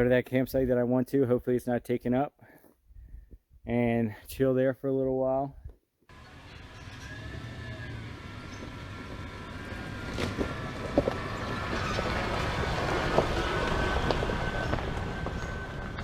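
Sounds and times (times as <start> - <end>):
vehicle driving on rough road: 6.1 - 16.0
knocks and clunks from road: 6.6 - 16.0.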